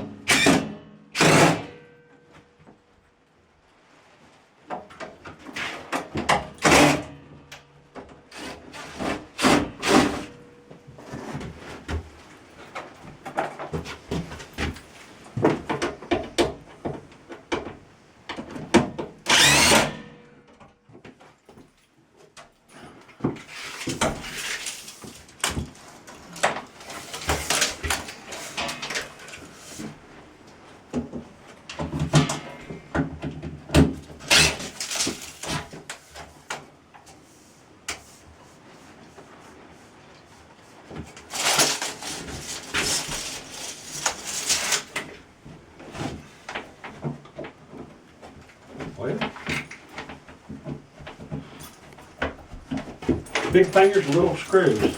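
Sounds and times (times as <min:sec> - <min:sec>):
box and equipment being handled: 0:34.0 - 0:36.4, 0:41.0 - 0:45.2, 0:45.8 - 0:54.9.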